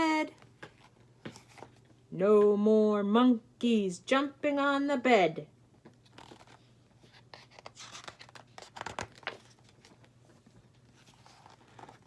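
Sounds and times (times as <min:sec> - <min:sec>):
book pages turning: 0:00.6 - 0:01.9, 0:05.9 - 0:12.0.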